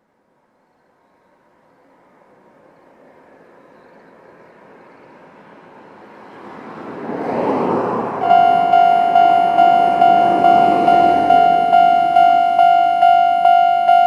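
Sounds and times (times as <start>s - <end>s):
level-crossing alarm dinging: 8.2s - 14.0s.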